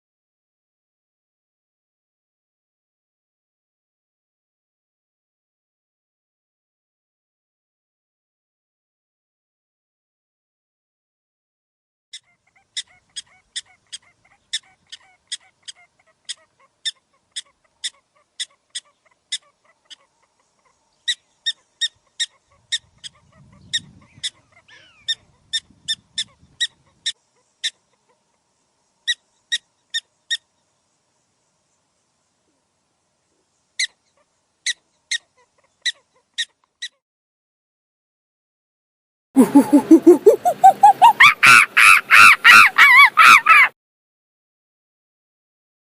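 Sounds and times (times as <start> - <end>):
bird calling: 12.2 - 28.4, 39.4 - 43.7.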